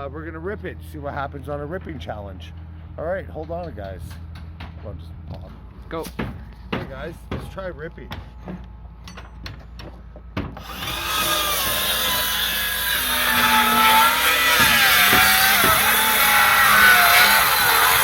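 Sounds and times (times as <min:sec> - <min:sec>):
circular saw cutting wood: 0:10.6 - 0:18.0.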